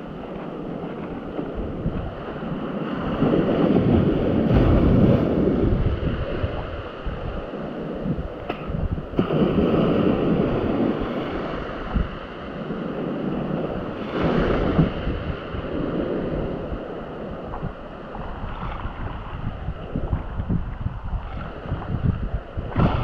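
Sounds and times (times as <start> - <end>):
sea waves: 0.0 - 23.0
wind buffeting microphone: 0.0 - 23.0.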